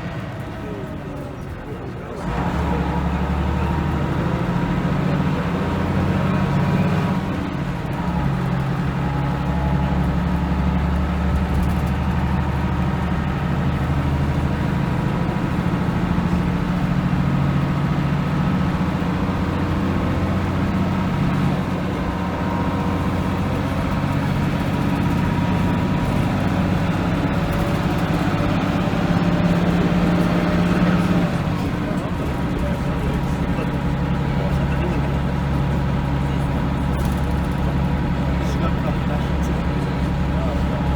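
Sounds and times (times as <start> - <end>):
bus diesel engine droning: 0.0 - 40.9.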